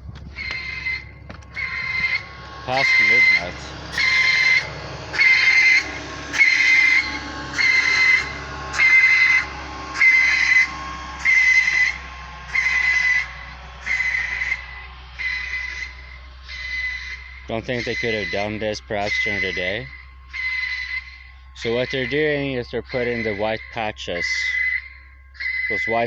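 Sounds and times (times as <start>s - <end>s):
road-marking machine pulsed hiss: 0.0s - 25.8s.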